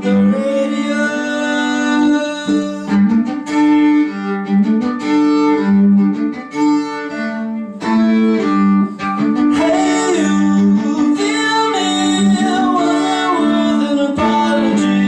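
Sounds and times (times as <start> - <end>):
bowed violin notes: 0.0 - 15.0.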